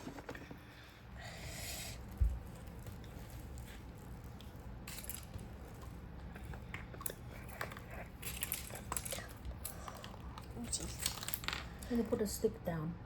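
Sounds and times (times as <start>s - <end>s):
crinkling rustles: 1.9s - 12.2s.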